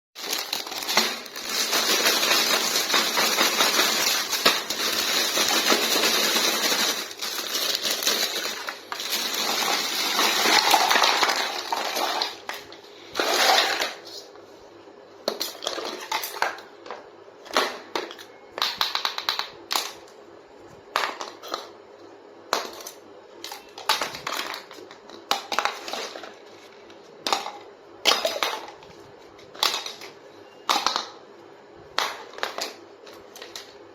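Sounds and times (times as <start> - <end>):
packaging crackling: 0.2 - 12.4.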